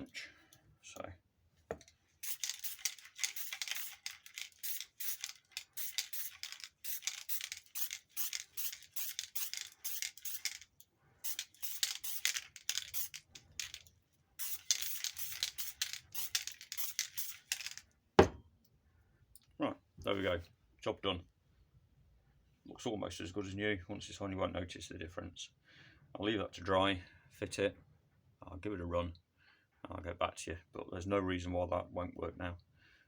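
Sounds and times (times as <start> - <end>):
spray paint hissing bursts: 2.2 - 10.6, 11.2 - 13.8, 14.4 - 17.8.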